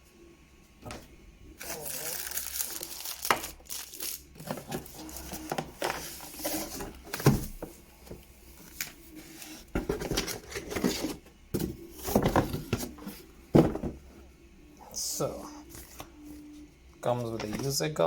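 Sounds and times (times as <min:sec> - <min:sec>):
cardboard and plastic rustling: 0:00.8 - 0:14.2.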